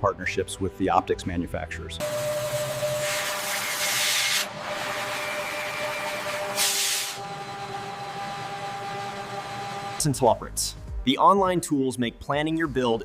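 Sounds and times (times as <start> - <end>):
machine hum: 2.0 - 10.2
loud hissing bursts: 6.5 - 7.2.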